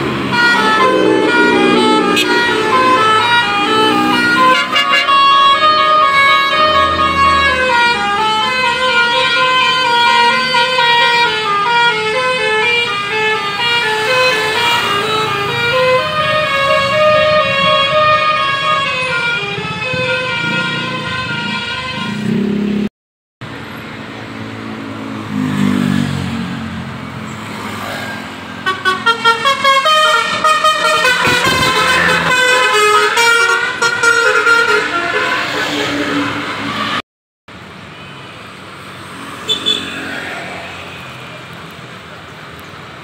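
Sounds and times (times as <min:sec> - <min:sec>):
bus musical horn playing a tune: 0:00.0 - 0:22.4, 0:28.6 - 0:37.0.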